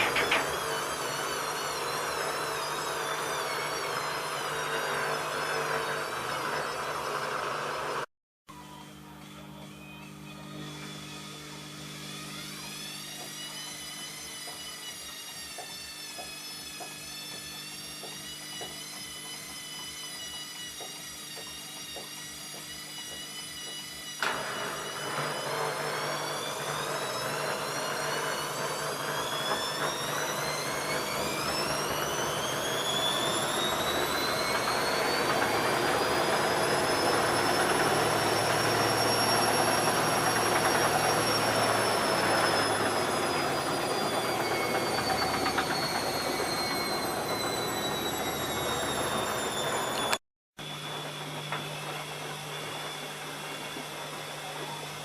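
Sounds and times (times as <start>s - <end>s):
washing machine drum spinning: 0.0s - 7.7s, 24.2s - 50.1s
washing machine motor whine: 0.0s - 55.0s.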